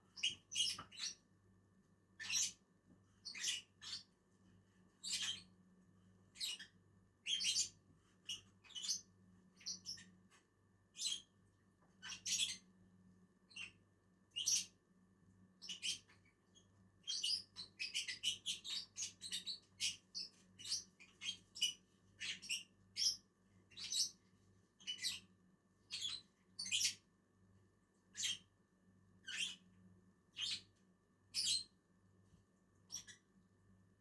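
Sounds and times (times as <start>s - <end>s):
lovebirds chirping: 5.0s - 5.5s, 17.1s - 24.2s, 24.8s - 25.3s, 25.9s - 27.0s, 29.2s - 29.6s, 30.4s - 30.6s, 31.4s - 31.7s.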